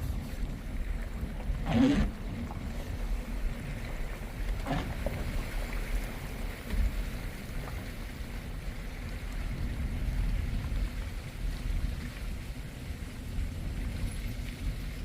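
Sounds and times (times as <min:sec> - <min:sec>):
wind rumbling on microphone: 0:00.0 - 0:15.0.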